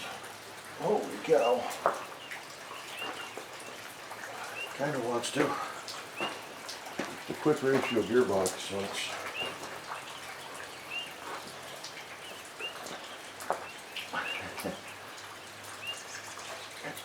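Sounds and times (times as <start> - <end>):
rain on a metal roof: 0.0 - 17.0.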